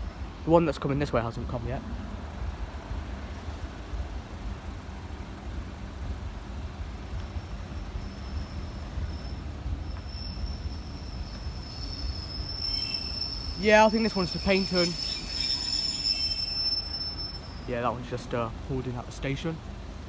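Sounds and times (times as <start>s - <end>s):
train rumbling past: 0.0s - 20.0s
high wheel squeal: 7.4s - 18.1s.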